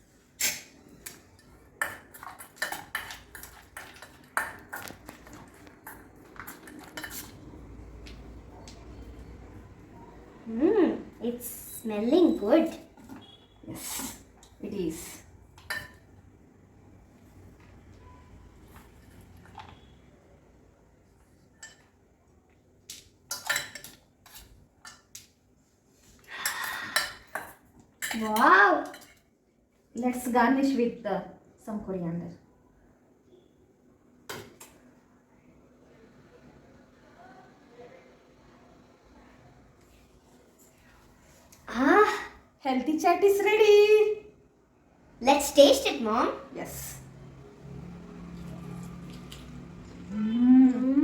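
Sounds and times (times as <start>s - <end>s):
cutlery and dishes clinking: 1.3s - 7.4s, 21.5s - 22.0s, 23.0s - 25.1s
spoon clinking against dishes: 15.6s - 16.1s, 21.5s - 21.9s, 23.3s - 25.1s.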